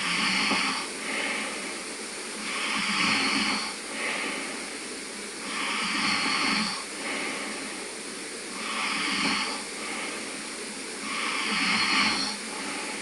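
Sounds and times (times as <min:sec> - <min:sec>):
man snoring: 0:00.0 - 0:00.9, 0:02.4 - 0:03.8, 0:05.4 - 0:06.8, 0:08.5 - 0:09.7, 0:11.0 - 0:13.0.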